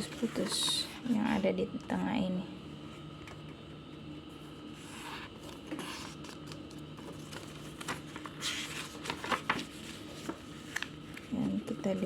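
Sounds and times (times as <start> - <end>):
paper rustling and folding: 0.0 - 1.4, 4.7 - 12.0
faint steady hum: 0.0 - 12.0.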